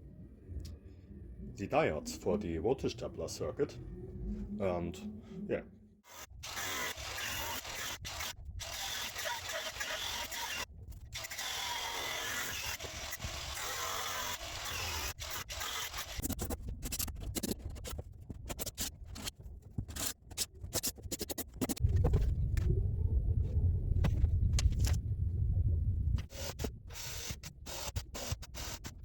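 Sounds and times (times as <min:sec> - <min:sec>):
loud low hum: 0:00.0 - 0:06.0, 0:21.8 - 0:26.2.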